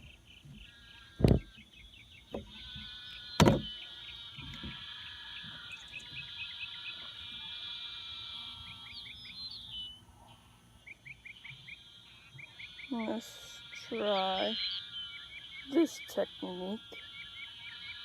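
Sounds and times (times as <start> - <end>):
birds chirping: 0.0 - 18.0
fishing reel whirring: 2.3 - 9.3, 11.5 - 18.0.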